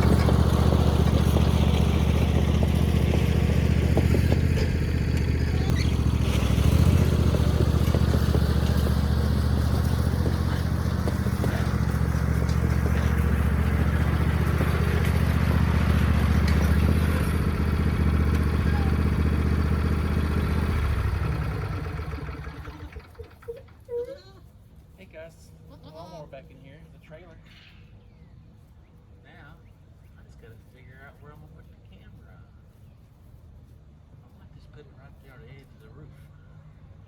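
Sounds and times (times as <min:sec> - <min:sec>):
engine running steadily: 0:00.0 - 0:27.8.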